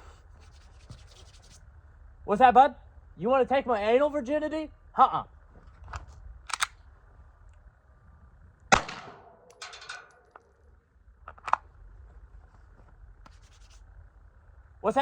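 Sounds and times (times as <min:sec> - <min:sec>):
pistol shots: 0:08.7 - 0:09.6.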